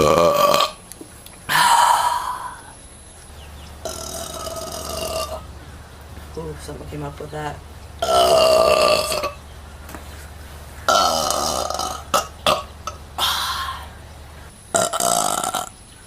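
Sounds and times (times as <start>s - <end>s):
woman burping: 0.0s - 0.8s, 3.8s - 5.4s, 8.0s - 9.4s, 10.9s - 13.9s, 14.8s - 15.7s.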